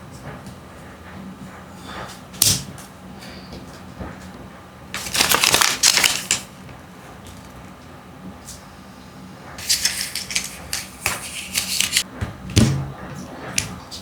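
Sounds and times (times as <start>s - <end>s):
packaging click: 5.0s - 6.5s
plastic wrapping crinkling: 5.0s - 7.6s, 9.6s - 12.0s.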